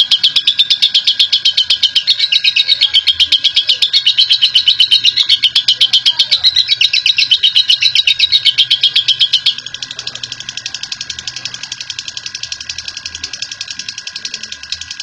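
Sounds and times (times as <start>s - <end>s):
bird trilling chirps: 0.0s - 15.0s.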